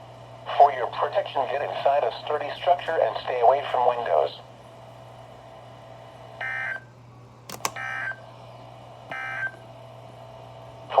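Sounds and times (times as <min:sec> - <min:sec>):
steady low hum: 0:00.0 - 0:11.0
sharp clicks: 0:07.5 - 0:07.8.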